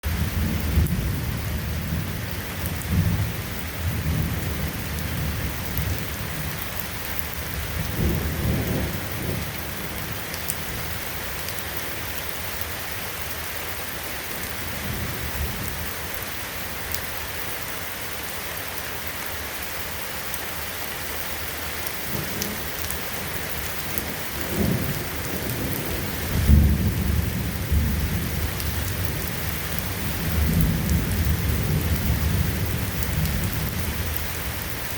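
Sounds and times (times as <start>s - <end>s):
thunder rumbling: 0.0s - 11.8s, 22.0s - 34.9s
steady rain: 0.0s - 34.9s.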